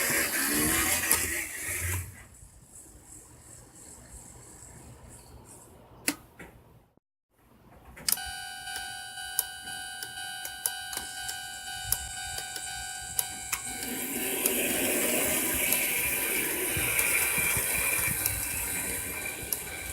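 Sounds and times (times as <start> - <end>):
electronic warning tone: 8.1 - 16.0, 18.0 - 19.9.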